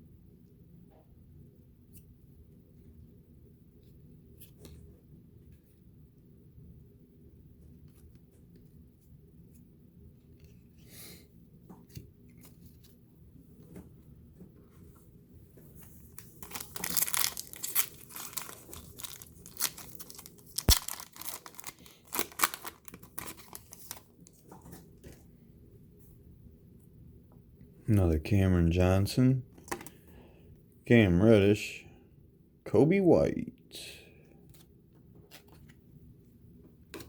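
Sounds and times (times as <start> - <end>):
plastic wrapper tearing and crinkling: 16.1 - 24.4.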